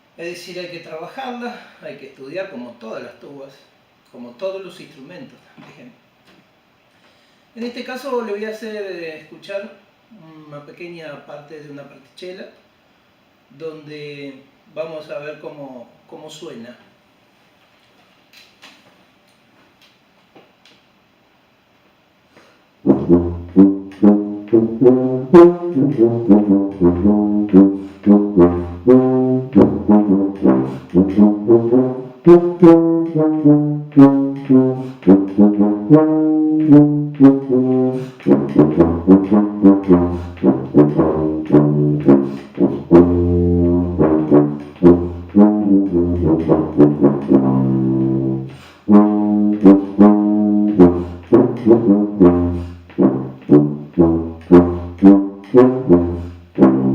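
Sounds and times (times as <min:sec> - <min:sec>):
tuba playing short tongued notes: 0:22.8 - 0:56.9.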